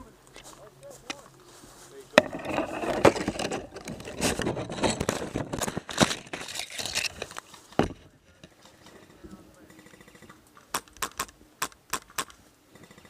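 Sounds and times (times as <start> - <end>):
scraping and rustling: 0.3 - 10.6.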